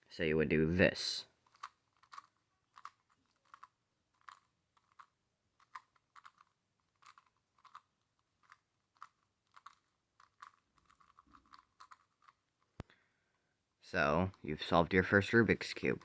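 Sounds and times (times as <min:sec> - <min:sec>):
puzzle cube plastic clicks: 0:01.4 - 0:12.9.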